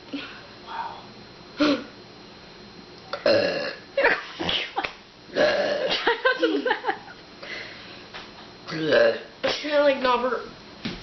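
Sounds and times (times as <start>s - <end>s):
man belching: 3.1s - 3.8s, 5.3s - 6.0s, 8.7s - 9.3s.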